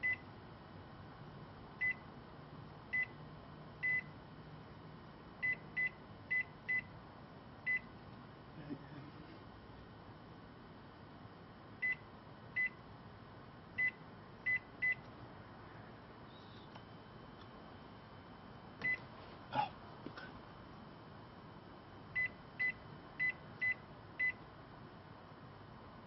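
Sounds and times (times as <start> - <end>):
microwave beeps: 0.0 - 0.3, 1.8 - 2.0, 2.9 - 3.2, 3.8 - 4.2, 5.4 - 6.9, 7.7 - 7.9, 11.8 - 12.8, 13.8 - 15.0, 18.8 - 19.0, 22.2 - 24.4.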